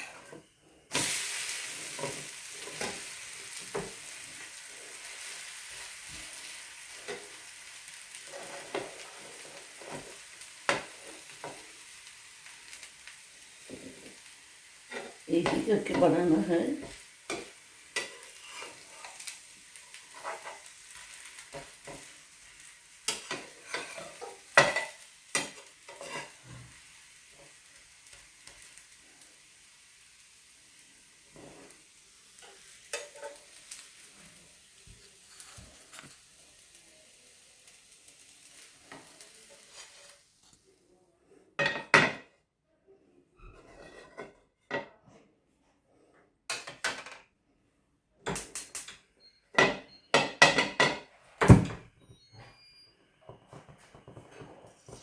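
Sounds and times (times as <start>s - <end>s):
spatula scraping and tapping pan: 0.0s - 1.1s, 1.7s - 4.5s, 8.2s - 11.8s, 14.9s - 19.4s, 20.0s - 28.8s, 31.2s - 36.2s, 38.6s - 40.6s, 43.5s - 45.1s, 53.3s - 55.0s
batter sizzling in a hot pan: 0.0s - 40.6s.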